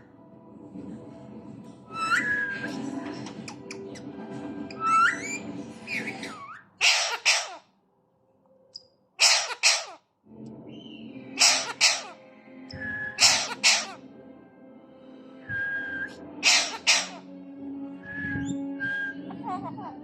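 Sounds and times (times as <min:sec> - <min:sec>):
parakeet whistled call: 0:04.9 - 0:07.6, 0:09.2 - 0:10.0, 0:10.8 - 0:12.2, 0:12.8 - 0:14.0, 0:16.4 - 0:17.2
parakeet imitating cough: 0:06.8 - 0:07.6, 0:09.2 - 0:10.0, 0:11.4 - 0:12.2, 0:13.2 - 0:14.0, 0:16.4 - 0:17.2.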